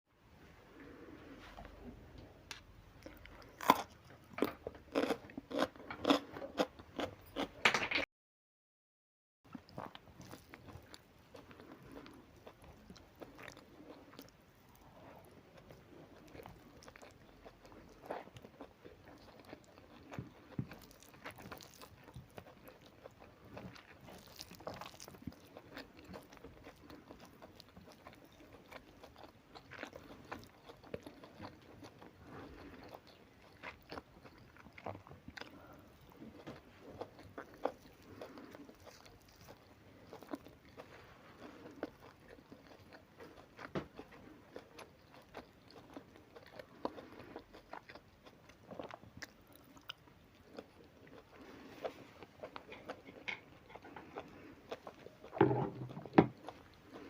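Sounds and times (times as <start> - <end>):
person chewing crunchy food: 1.0 - 7.7, 9.5 - 57.0.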